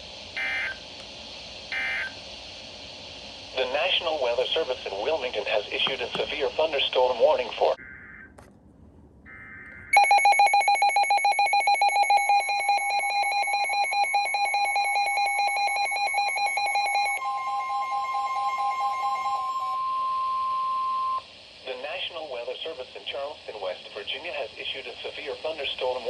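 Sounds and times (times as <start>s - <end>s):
steady warning tone: 0.0s - 0.9s, 1.6s - 7.8s, 9.3s - 26.0s
rapid pulsing alarm beeps: 0.4s - 0.8s, 1.7s - 2.2s, 9.3s - 21.2s.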